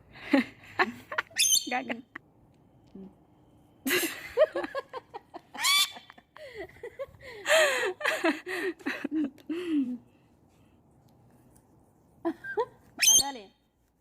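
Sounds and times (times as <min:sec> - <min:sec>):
lorikeets screeching: 0:01.4 - 0:01.8, 0:05.6 - 0:06.0, 0:13.0 - 0:13.4.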